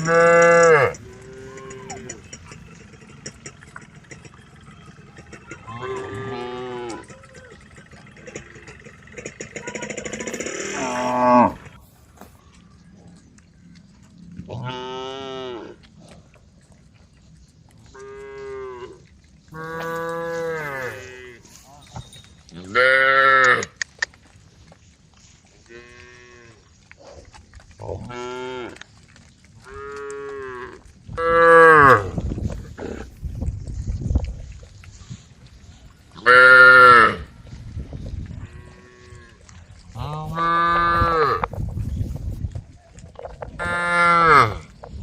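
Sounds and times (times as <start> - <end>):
cows mooing: 0.0 - 11.9, 14.4 - 15.8, 18.0 - 23.8, 25.6 - 26.6, 27.8 - 28.8, 29.6 - 33.2, 36.1 - 37.3, 38.4 - 41.6, 43.6 - 44.7.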